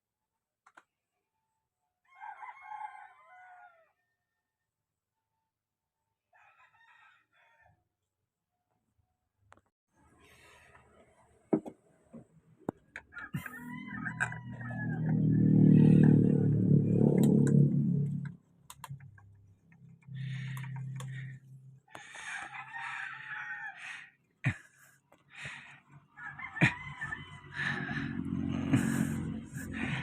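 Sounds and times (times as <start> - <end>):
rooster crowing: 2.0 - 4.4, 6.3 - 7.8, 13.0 - 16.7, 21.9 - 24.1, 26.1 - 30.0
loud low motor drone: 14.1 - 18.4, 20.0 - 21.8, 26.6 - 30.0.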